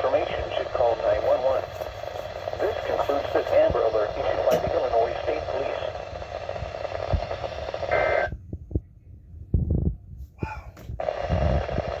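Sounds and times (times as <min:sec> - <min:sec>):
radio static hiss: 0:00.0 - 0:08.4, 0:11.0 - 0:12.0.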